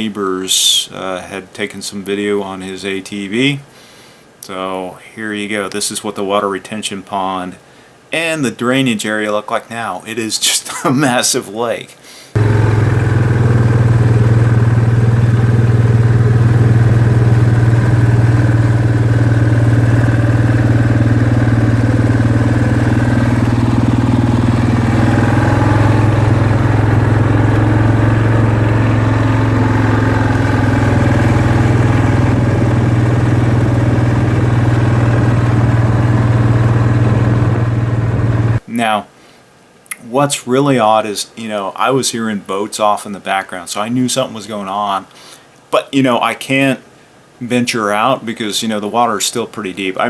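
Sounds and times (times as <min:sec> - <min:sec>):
atv engine running: 0:12.4 - 0:38.6.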